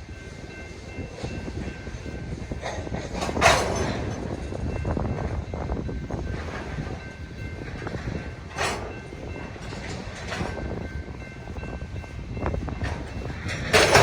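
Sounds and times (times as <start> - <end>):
freight train cars rumbling past: 0.0 - 14.0
train car clank: 0.5 - 14.0
wheels clattering over rails: 2.6 - 4.4, 7.7 - 10.6, 12.7 - 14.0.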